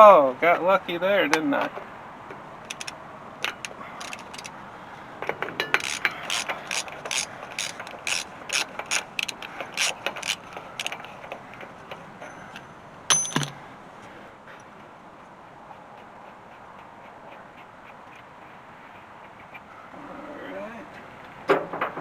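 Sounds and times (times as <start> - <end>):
hand ratchet clicking: 2.7 - 4.5, 5.7 - 11.2
metallic clank ringing: 13.1 - 13.6.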